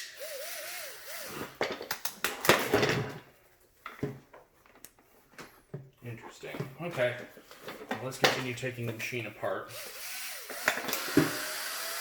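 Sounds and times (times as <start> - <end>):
electric screwdriver running: 0.2 - 1.6, 9.7 - 12.0.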